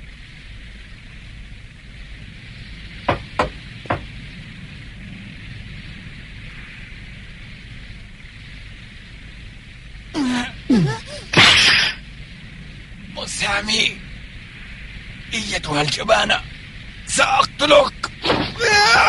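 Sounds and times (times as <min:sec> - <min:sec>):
low rumble: 0:00.0 - 0:19.0
steady hiss: 0:00.0 - 0:19.0
sharp impacts: 0:10.8 - 0:12.0.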